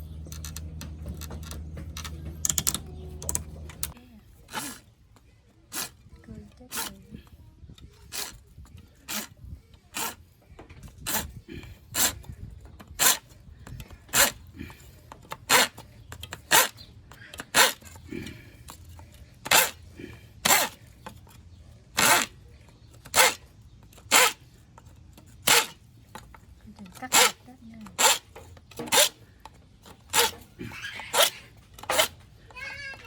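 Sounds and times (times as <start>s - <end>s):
hand saw cutting wood: 0.0s - 4.9s, 5.7s - 6.0s, 6.6s - 7.2s, 8.0s - 8.4s, 9.0s - 12.3s, 12.9s - 13.3s, 14.0s - 18.4s, 19.4s - 20.9s, 22.0s - 22.4s, 23.1s - 23.5s, 24.1s - 24.4s, 25.4s - 25.8s, 27.0s - 29.3s, 30.0s - 32.2s.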